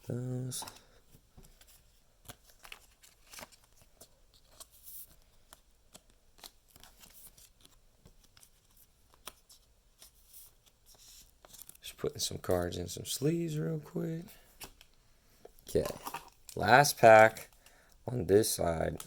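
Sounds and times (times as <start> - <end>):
trading cards clicking and rustling: 0.4 - 12.6, 14.3 - 19.0.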